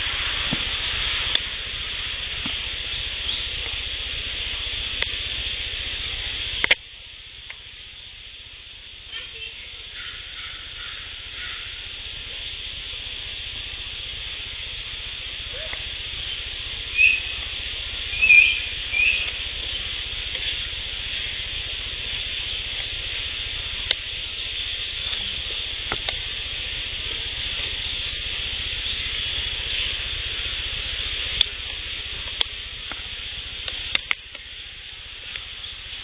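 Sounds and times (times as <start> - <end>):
steady high hiss: 0.0 - 36.0
faint sharp clicks: 5.0 - 5.2, 6.6 - 6.8, 23.8 - 24.1, 31.4 - 34.5.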